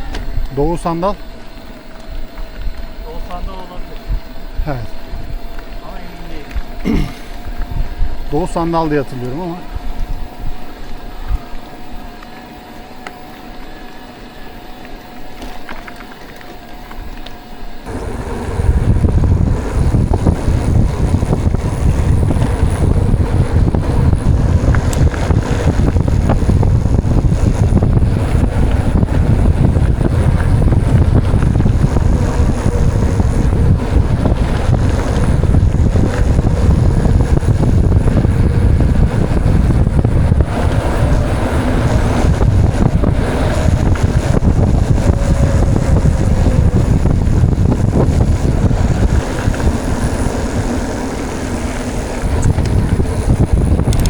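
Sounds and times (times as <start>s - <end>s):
bike clicks: 0.0s - 9.0s, 9.6s - 54.0s
faint steady whine: 0.0s - 54.0s
tyres rattling on gravel: 0.0s - 54.0s
wind buffeting on microphone: 0.0s - 54.0s.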